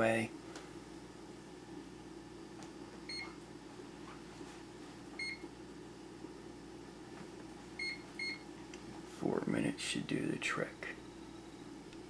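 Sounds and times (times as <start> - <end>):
steady low hum: 0.0 - 12.0
microwave control panel beeping: 3.0 - 3.4, 5.2 - 5.6, 7.8 - 8.5.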